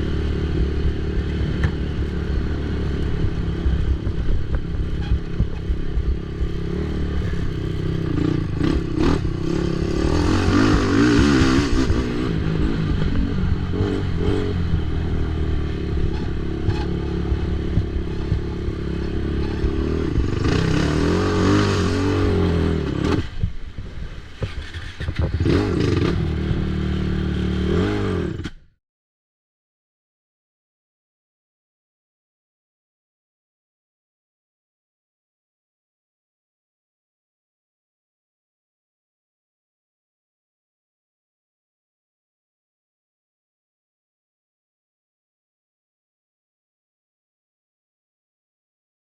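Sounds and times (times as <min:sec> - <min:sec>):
atv engine revving: 0:00.0 - 0:28.6.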